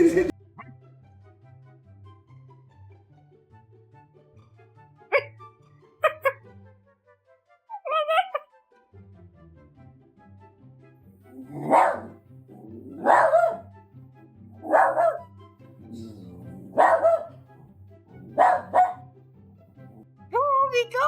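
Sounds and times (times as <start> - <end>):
quiet background music: 0.0 - 21.0
dog barking: 5.1 - 5.4, 6.0 - 6.4, 7.7 - 8.5, 11.4 - 13.7, 14.6 - 15.3, 15.9 - 19.1.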